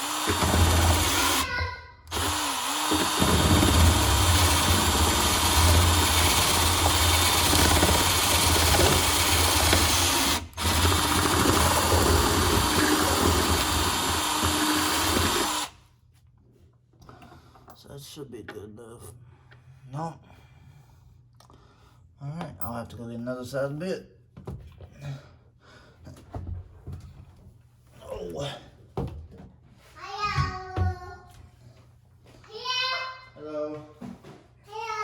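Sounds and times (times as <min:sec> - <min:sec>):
power drill boring through metal: 0:00.0 - 0:15.8.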